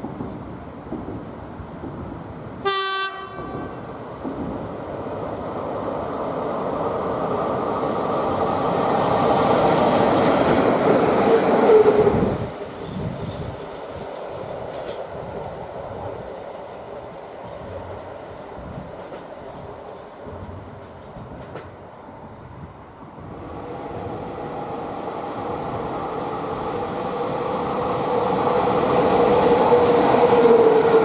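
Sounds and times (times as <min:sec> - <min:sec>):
train rumble and wheel clatter: 0:00.0 - 0:31.0
locomotive horn blast: 0:02.7 - 0:03.8.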